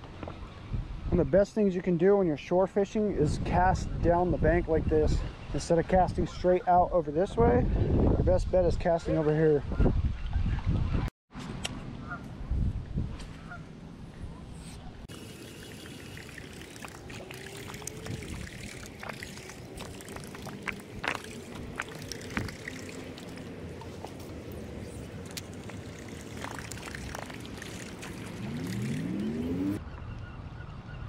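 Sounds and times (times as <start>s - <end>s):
pond water splashing: 15.1s - 29.8s
rising tone: 28.1s - 29.8s.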